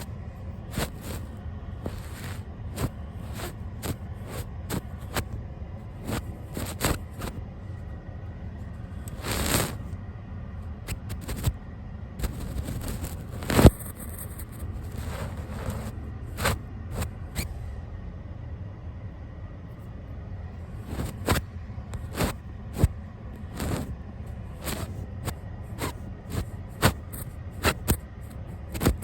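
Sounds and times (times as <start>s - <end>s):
brush scratching on microphone: 0.7s - 5.3s, 6.0s - 7.4s, 9.0s - 9.9s, 10.9s - 11.6s, 12.2s - 17.1s, 20.8s - 23.9s, 24.5s - 29.0s.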